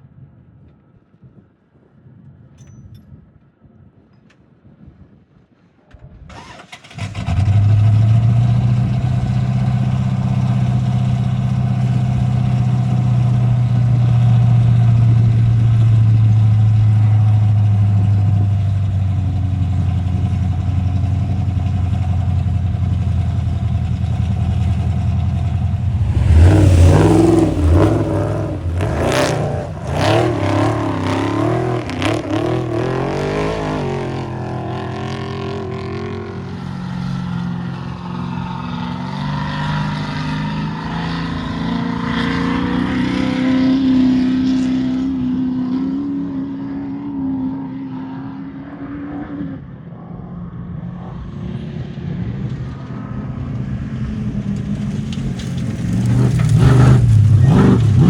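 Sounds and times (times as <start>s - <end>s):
race vehicle engine revving: 6.3s - 47.2s, 54.6s - 58.0s.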